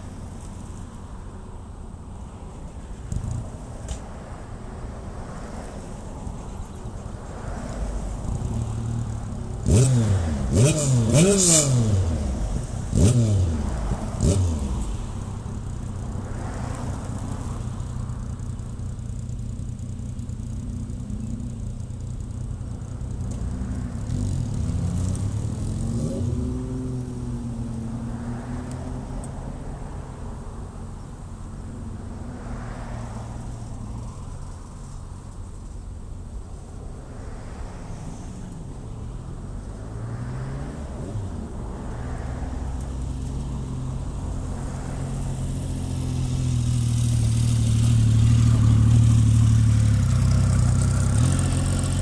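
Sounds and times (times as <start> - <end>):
vehicle passing by: 7.2 - 18.2, 23.2 - 30.9, 31.9 - 35.0, 36.9 - 52.0.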